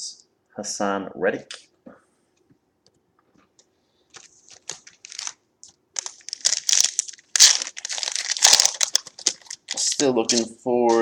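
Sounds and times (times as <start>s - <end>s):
foil wrapper crinkling: 4.1s - 11.0s.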